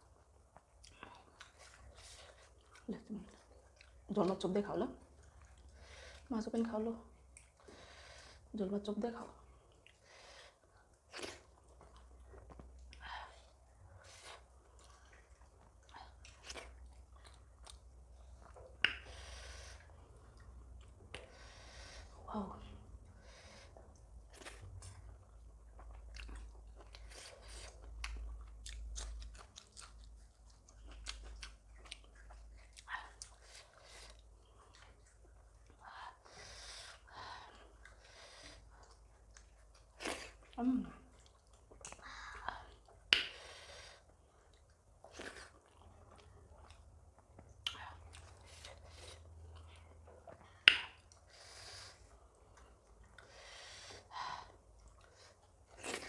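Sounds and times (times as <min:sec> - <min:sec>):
chewing and biting: 0:00.0 - 0:04.1, 0:14.0 - 0:21.3, 0:23.8 - 0:35.8, 0:36.8 - 0:56.0
wet mouth clicks: 0:50.6 - 0:51.2
sharp mouth smacks: 0:50.7 - 0:51.0.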